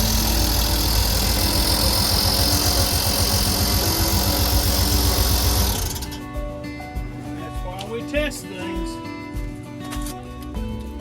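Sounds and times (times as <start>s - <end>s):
van engine idling: 0.0s - 8.4s.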